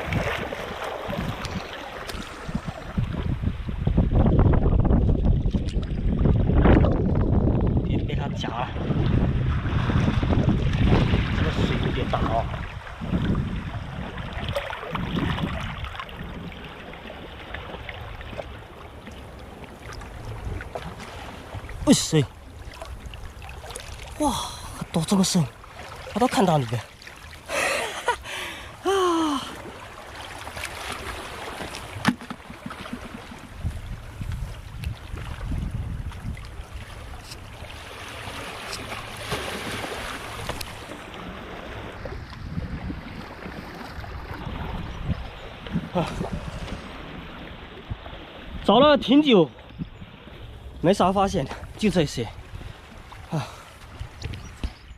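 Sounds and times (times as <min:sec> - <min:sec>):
seawater washing among rocks: 0:00.0 - 0:03.5, 0:08.7 - 0:44.8
wind buffeting microphone: 0:00.0 - 0:18.1, 0:30.8 - 0:54.9
small clicks and splashes: 0:05.4 - 0:06.0.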